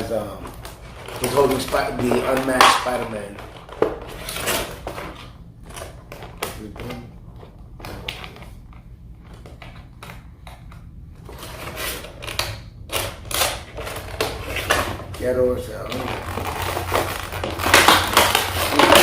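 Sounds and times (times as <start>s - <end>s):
plastic packaging clicks and rustles: 0.4s - 19.0s.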